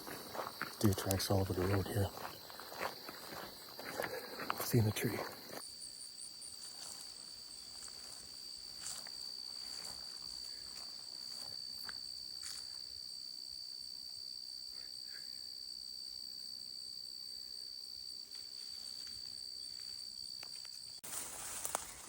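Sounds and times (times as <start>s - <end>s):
footsteps through vegetation: 0.0s - 5.6s, 6.5s - 12.8s, 18.3s - 22.0s
high-pitched insect chorus: 0.0s - 22.0s.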